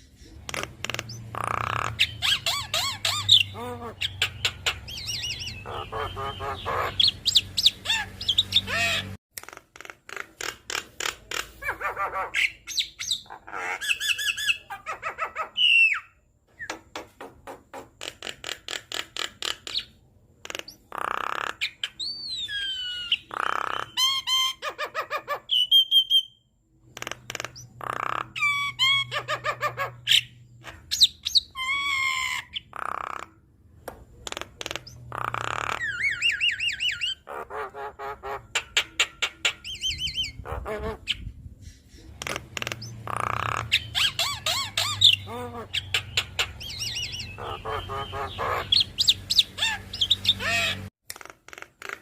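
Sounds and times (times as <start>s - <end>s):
bird singing varied song: 0.0s - 9.2s, 21.6s - 24.6s, 25.4s - 32.8s, 38.5s - 50.9s.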